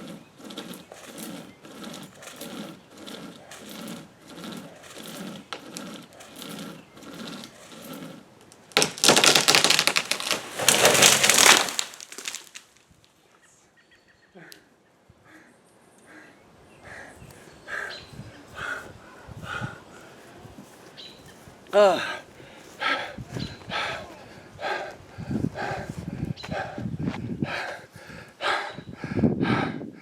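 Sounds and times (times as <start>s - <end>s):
rope saw rasping through wood: 0.0s - 12.6s, 17.3s - 26.8s
tree limb crashing down: 8.6s - 13.1s.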